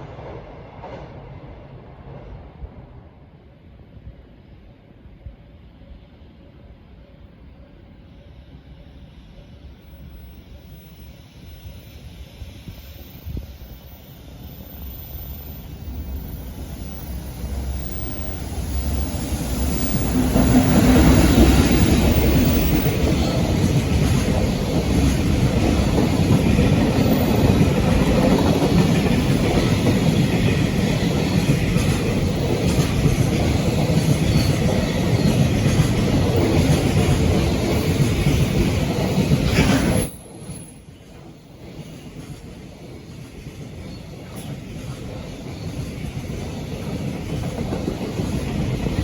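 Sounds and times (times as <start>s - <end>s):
freight train passing: 0.0s - 49.0s
wheels rattling on rails: 14.7s - 49.0s.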